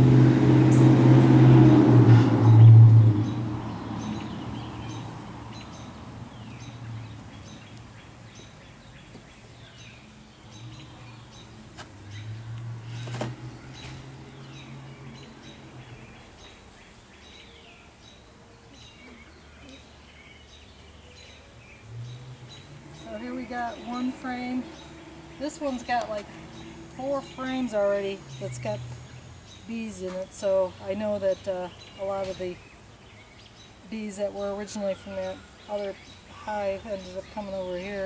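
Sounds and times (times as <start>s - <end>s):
low hum: 0.0s - 7.1s
songbird chirping: 0.0s - 38.0s.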